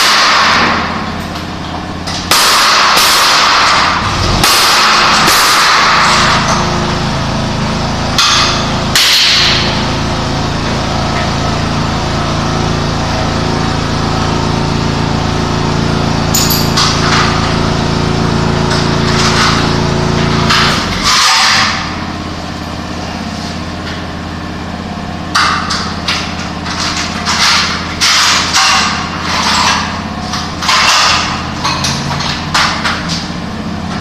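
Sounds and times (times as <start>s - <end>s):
steady motor hum: 0.0s - 34.0s
sharp strikes: 2.3s - 6.1s.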